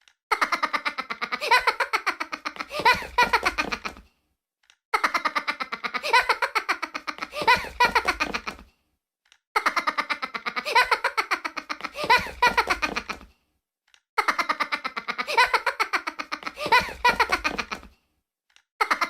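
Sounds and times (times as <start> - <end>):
high-pitched staccato laughter: 0.3 - 4.0, 5.0 - 8.6, 9.6 - 13.3, 14.2 - 17.9, 18.8 - 19.0.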